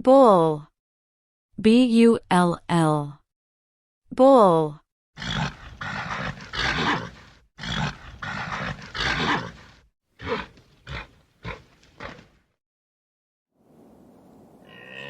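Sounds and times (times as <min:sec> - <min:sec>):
bull bellowing: 0:05.2 - 0:12.4, 0:14.6 - 0:15.0
bull grunting: 0:05.2 - 0:12.5, 0:14.6 - 0:15.0.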